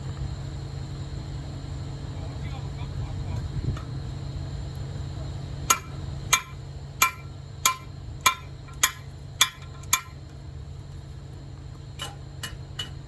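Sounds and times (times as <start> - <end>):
low machine engine hum: 0.0 - 13.0
metal-on-metal strikes: 5.7 - 10.2, 12.0 - 13.0.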